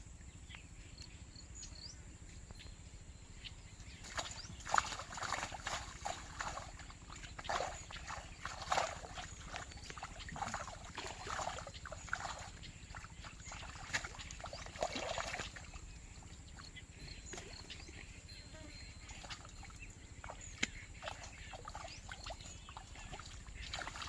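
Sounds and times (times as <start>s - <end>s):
water splashing and sloshing: 3.7s - 24.0s.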